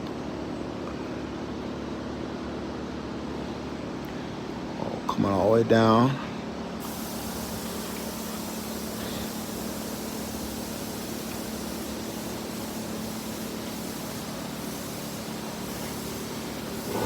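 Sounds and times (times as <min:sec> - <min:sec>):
background hiss: 0:06.8 - 0:17.0.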